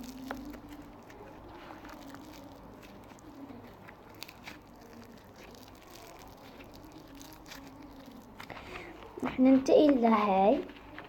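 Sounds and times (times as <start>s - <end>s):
slime squeezed by hand: 0.0s - 9.4s.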